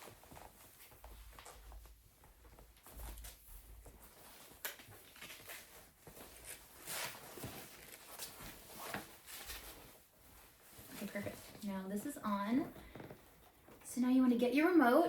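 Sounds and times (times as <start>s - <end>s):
handling rustling: 0.0s - 13.8s.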